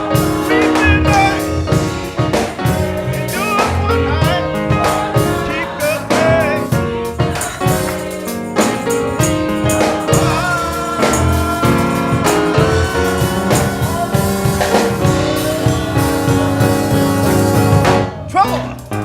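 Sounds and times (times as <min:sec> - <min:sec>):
drums: 0:00.0 - 0:19.0
gospel band playing: 0:00.0 - 0:19.0
sustained keyboard chords: 0:00.0 - 0:19.0.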